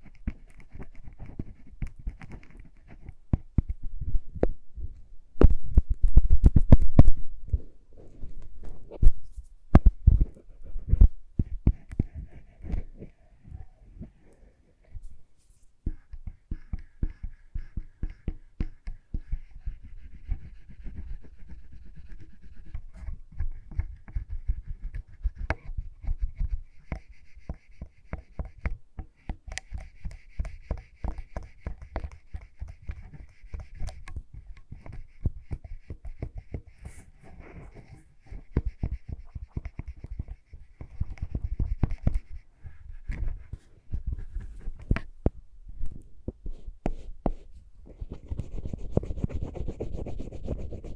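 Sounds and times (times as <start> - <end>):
small clicks and taps: 0.0 - 3.8, 26.8 - 37.0.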